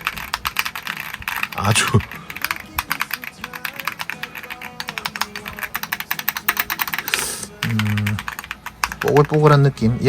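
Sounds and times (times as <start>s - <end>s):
mechanical keyboard typing: 0.0s - 9.9s
faint music: 0.0s - 10.0s.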